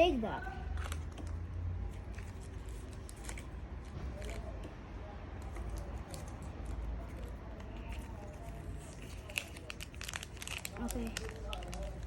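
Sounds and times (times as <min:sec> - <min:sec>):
cards clicking and rustling: 0:02.0 - 0:04.8.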